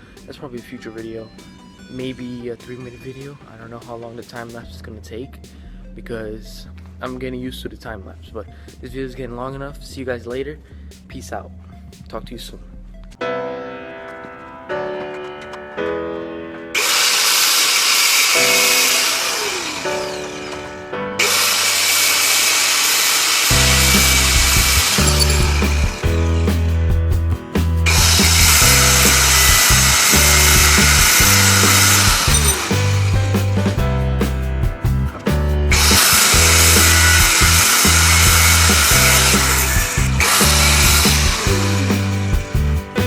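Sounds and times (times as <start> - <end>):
loud harsh noise: 16.8 - 26.0, 27.9 - 33.1
heavy bass line: 23.5 - 43.0.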